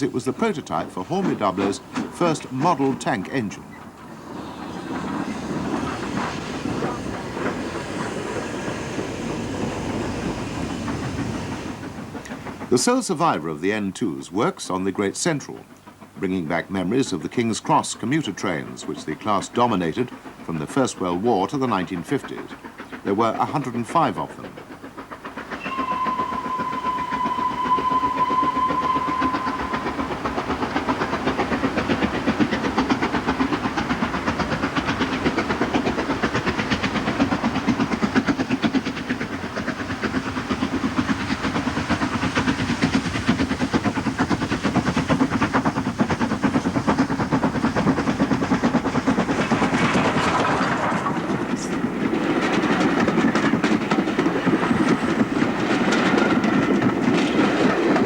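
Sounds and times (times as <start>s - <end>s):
rail noise: 0.0s - 58.0s
steam engine running: 0.0s - 58.0s
steam whistle: 25.6s - 31.6s.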